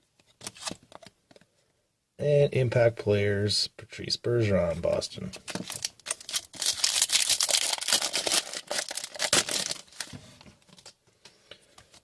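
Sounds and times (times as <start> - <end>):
plastic wrapping crinkling and tearing: 5.5 - 11.0.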